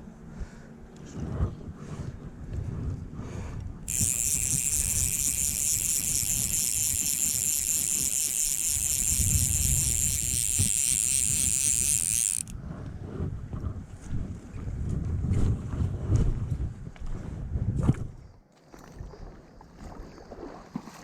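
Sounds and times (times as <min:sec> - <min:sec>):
fishing reel ratcheting: 0:03.9 - 0:12.5.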